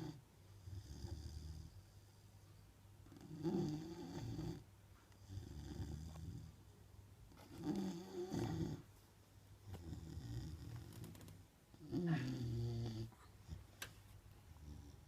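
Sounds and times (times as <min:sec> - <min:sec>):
dog snoring: 0:00.0 - 0:02.3, 0:03.1 - 0:06.6, 0:07.3 - 0:08.9, 0:09.7 - 0:13.6, 0:14.5 - 0:15.0.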